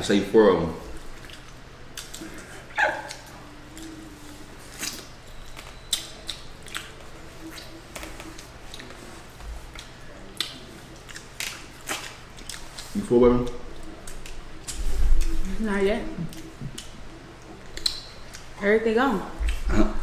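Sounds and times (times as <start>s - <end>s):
faint low hum: 0.0s - 20.0s
wet eating smacks: 9.7s - 15.4s.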